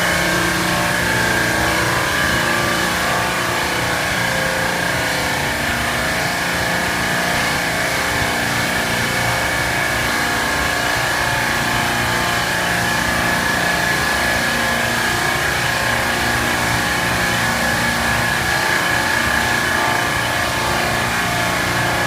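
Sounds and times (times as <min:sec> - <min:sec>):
machine running with high whine: 0:00.0 - 0:22.0.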